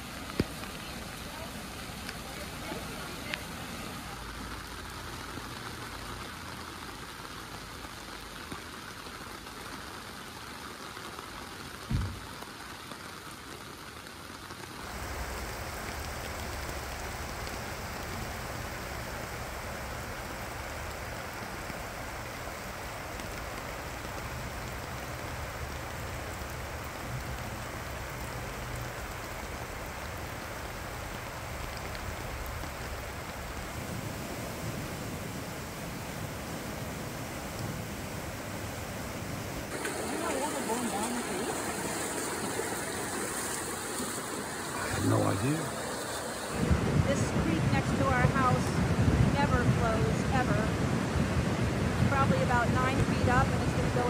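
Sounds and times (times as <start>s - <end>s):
heavy rain falling: 0.0s - 54.0s
water rushing with low rumble: 0.0s - 54.0s
short thump: 11.9s - 12.2s.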